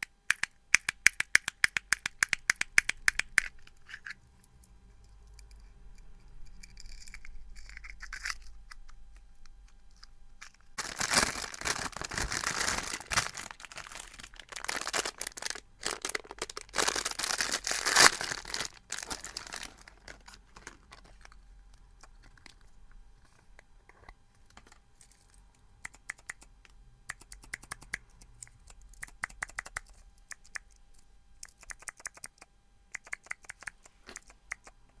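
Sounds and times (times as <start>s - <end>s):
fidget toys clicking: 0.0s - 4.2s, 25.8s - 35.0s
loud crinkling and rustling: 9.9s - 21.4s.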